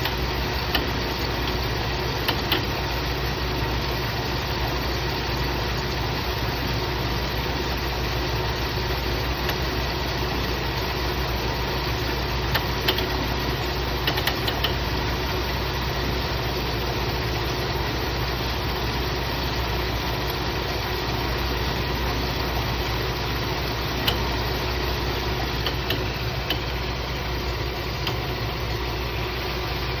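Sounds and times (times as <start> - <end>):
air-conditioning compressor running: 0.0 - 30.0
car engine idling: 0.0 - 30.0
sharp ticks: 14.0 - 14.8, 25.6 - 26.7.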